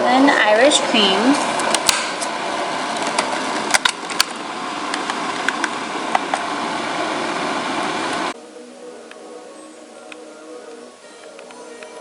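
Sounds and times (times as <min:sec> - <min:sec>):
coffee maker whirring: 0:00.0 - 0:08.4.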